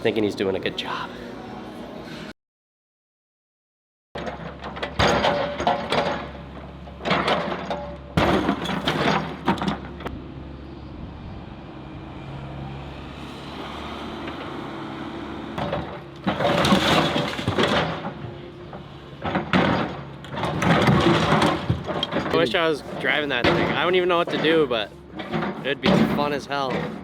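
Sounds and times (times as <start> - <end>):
material crashing and cracking: 16.2 - 18.2.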